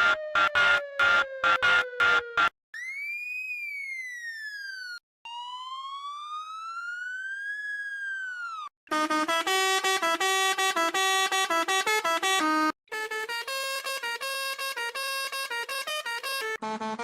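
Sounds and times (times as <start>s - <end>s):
police siren wailing: 0.0s - 12.6s
musical bus horn tune: 8.9s - 17.0s.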